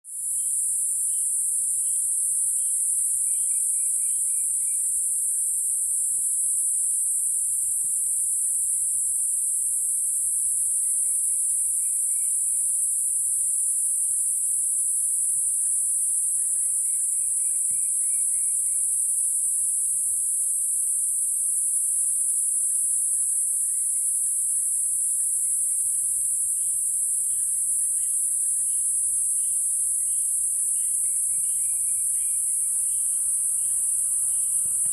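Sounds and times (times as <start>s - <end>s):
insects shrilling: 22.3s - 34.9s
faint bird chirps: 29.7s - 34.9s.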